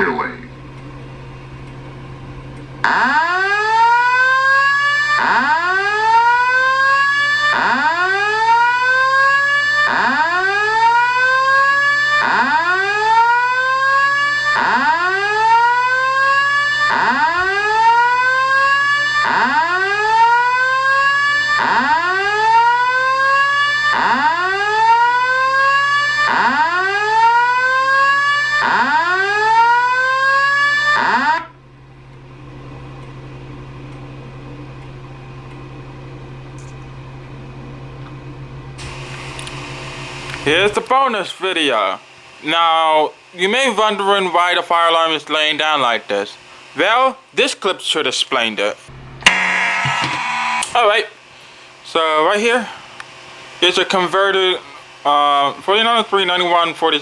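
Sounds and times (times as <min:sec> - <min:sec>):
fire alarm whoop tone: 0:02.8 - 0:31.6, 0:49.3 - 0:51.2
evacuation message: 0:38.8 - 0:47.8, 0:49.3 - 0:57.0.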